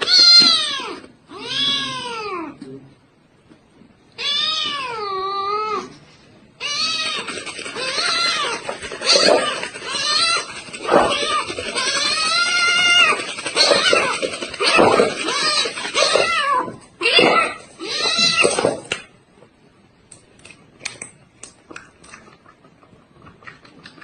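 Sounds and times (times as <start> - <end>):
cat meowing: 0.0 - 2.6, 4.1 - 5.9, 6.6 - 18.9.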